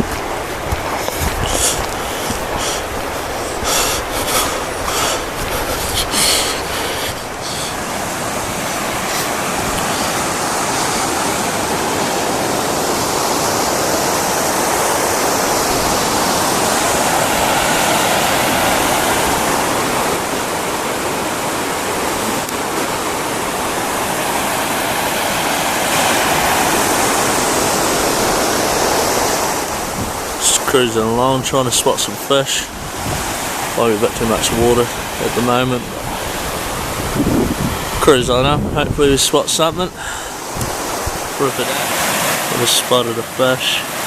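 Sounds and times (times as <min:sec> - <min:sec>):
river rushing over rapids: 0:00.0 - 0:44.0.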